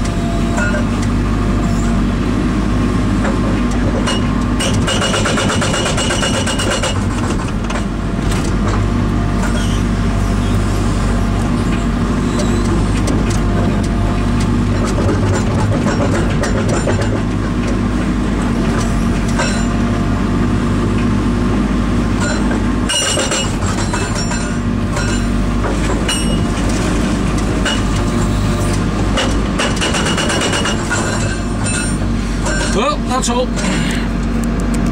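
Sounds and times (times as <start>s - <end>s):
diesel engine running: 0.0s - 34.9s
hydraulic breaker hammering: 3.2s - 9.7s, 22.2s - 28.3s, 29.0s - 33.8s.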